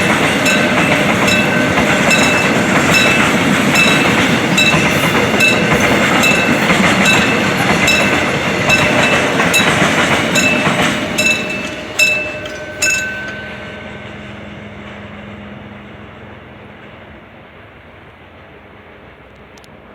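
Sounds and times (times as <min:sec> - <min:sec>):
crossing warning bell ringing: 0:00.0 - 0:15.1
freight train rolling past: 0:00.0 - 0:19.9.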